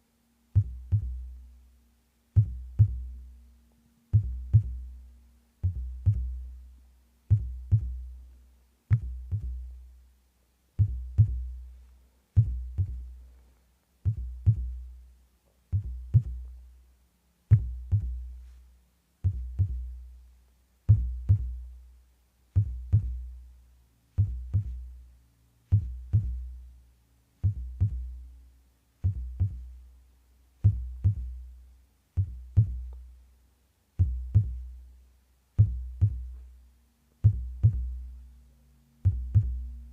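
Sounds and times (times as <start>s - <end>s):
heartbeat double thumps: 0.6s - 1.3s, 2.4s - 3.2s, 4.1s - 4.9s, 5.6s - 6.5s, 7.3s - 8.2s, 8.9s - 9.8s, 10.8s - 11.6s, 12.4s - 13.2s, 14.0s - 14.9s, 15.7s - 16.6s, 17.5s - 18.4s, 19.2s - 20.0s, 20.9s - 21.7s, 22.6s - 23.4s, 24.2s - 24.9s, 25.7s - 26.6s, 27.4s - 28.2s, 29.0s - 29.8s, 30.6s - 31.5s, 32.2s - 33.0s, 34.0s - 34.7s, 35.6s - 36.4s, 37.2s - 38.1s, 39.0s - 39.7s.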